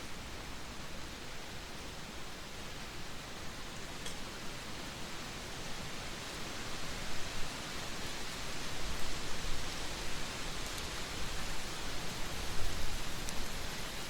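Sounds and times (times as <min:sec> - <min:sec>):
wind blowing in gusts: 0:06.9 - 0:14.0.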